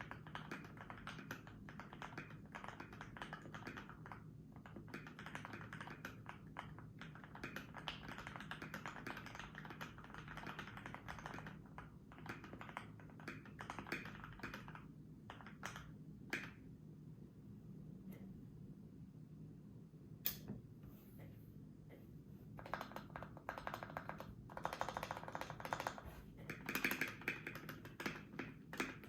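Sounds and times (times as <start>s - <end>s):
mechanical keyboard typing: 0.0s - 16.5s, 22.6s - 29.0s.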